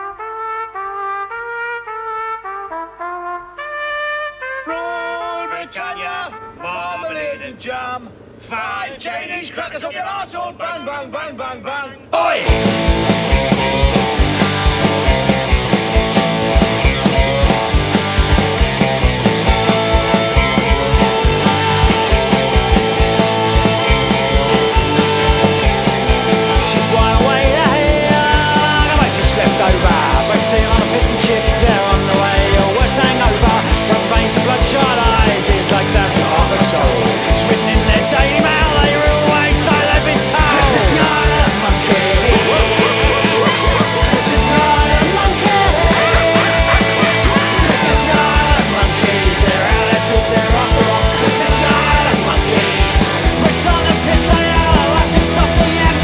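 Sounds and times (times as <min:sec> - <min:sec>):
distorted electric guitars: 0:12.2 - 0:56.0
fast drum beat: 0:12.2 - 0:56.0.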